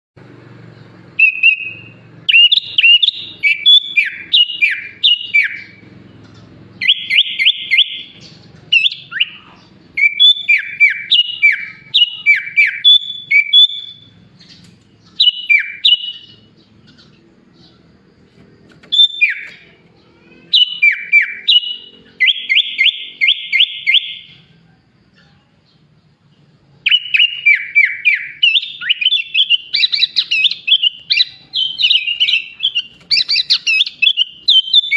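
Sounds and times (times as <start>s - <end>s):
bulbul singing whistled phrases: 0.8s - 34.9s
bird rattling trills: 10.0s - 23.2s, 32.0s - 34.9s.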